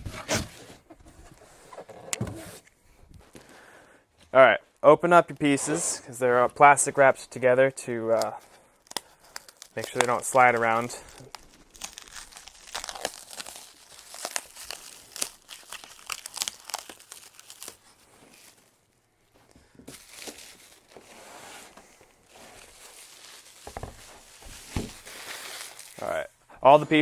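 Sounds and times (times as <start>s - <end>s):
plastic wrap tearing and crumpling: 8.2s - 18.9s, 19.9s - 21.6s, 22.2s - 26.2s.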